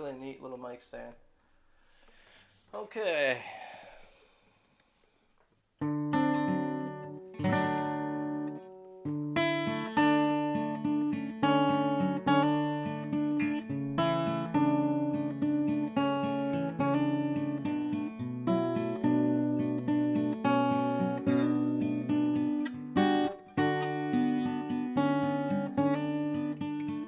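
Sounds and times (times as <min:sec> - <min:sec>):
acoustic guitar strumming: 0:05.8 - 0:27.0.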